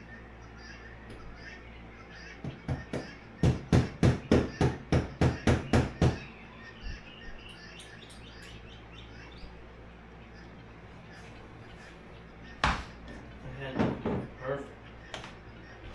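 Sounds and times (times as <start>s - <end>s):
hammer knocking: 2.4s - 6.2s, 13.7s - 14.3s.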